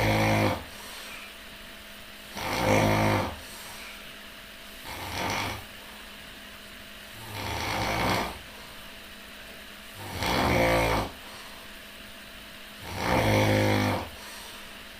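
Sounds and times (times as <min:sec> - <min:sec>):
person snoring loudly: 0:00.0 - 0:00.8, 0:02.3 - 0:03.5, 0:04.8 - 0:05.8, 0:07.1 - 0:08.5, 0:09.9 - 0:11.3, 0:12.8 - 0:14.2.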